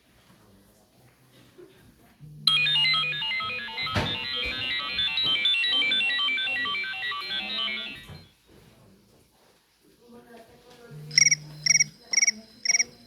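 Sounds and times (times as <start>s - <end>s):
phone timer alert tone: 2.5s - 8.2s, 11.0s - 13.0s.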